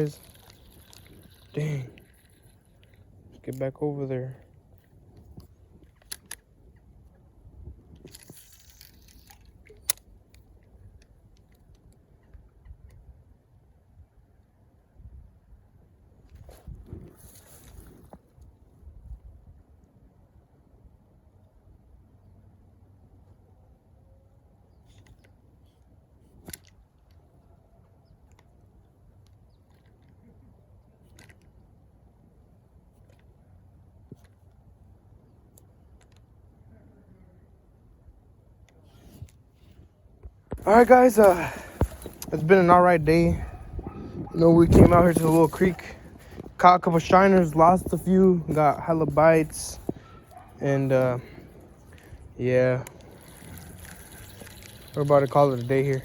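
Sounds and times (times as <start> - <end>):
handling rustle: 0.0 - 12.4, 16.2 - 18.6, 38.6 - 56.0
scraping rustle: 40.5 - 56.0.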